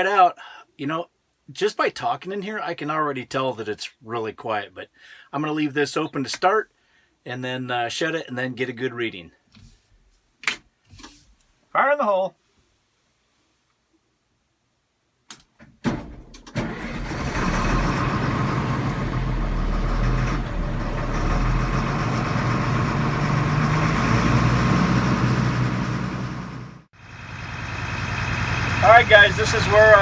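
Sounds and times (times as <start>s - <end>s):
diesel engine starting and running: 15.9s - 30.0s.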